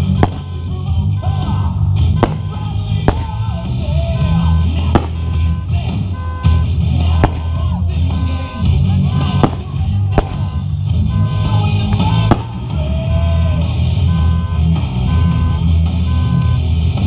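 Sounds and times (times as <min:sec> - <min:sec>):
sharp cracks: 0:00.0 - 0:00.7, 0:02.2 - 0:03.8, 0:04.8 - 0:05.5, 0:07.1 - 0:07.9, 0:09.3 - 0:10.6, 0:11.9 - 0:12.8
rock music: 0:00.0 - 0:17.0.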